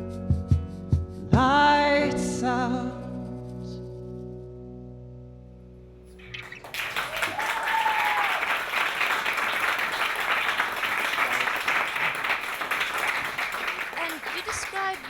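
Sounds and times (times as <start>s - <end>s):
audience applause: 6.2s - 15.0s
high call from audience: 6.2s - 15.0s.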